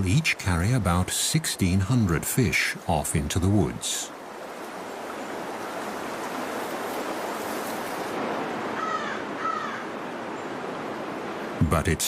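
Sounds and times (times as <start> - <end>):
stream water rushing: 0.0 - 12.0
crow cawing: 8.7 - 10.0.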